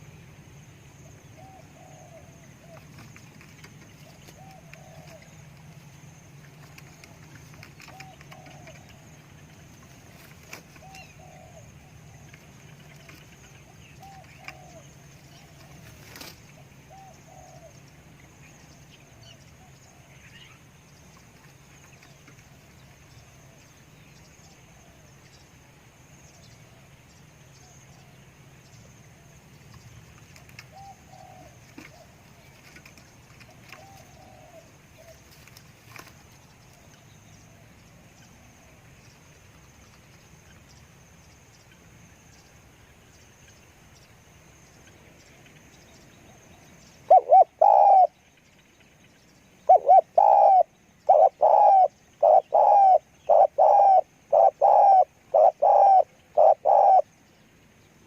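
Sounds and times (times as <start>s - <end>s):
dove cooing: 1.0s - 17.9s, 30.3s - 36.1s, 47.0s - 48.2s, 49.6s - 57.1s.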